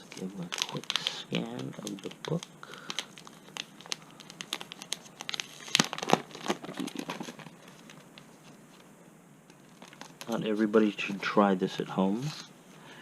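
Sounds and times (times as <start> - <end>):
packaging crinkling: 0.0 - 8.9, 9.5 - 10.9.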